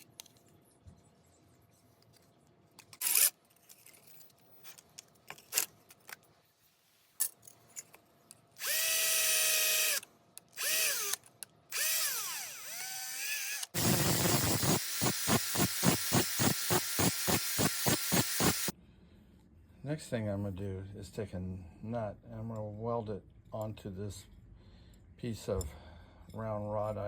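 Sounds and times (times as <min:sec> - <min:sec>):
electric drill whining: 0:08.6 - 0:10.0, 0:10.6 - 0:18.7
loud pulsing noise: 0:13.8 - 0:18.7.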